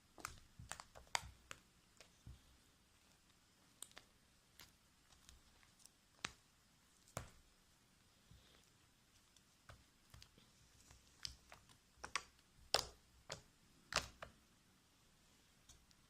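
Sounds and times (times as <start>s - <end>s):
small clicks and pops: 0.0s - 6.4s, 8.4s - 14.5s.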